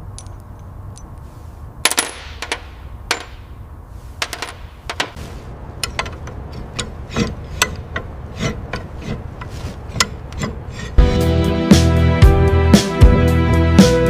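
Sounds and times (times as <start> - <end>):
hand tool scraping and rasping: 5.1 - 11.4
music with a beat: 11.0 - 14.0.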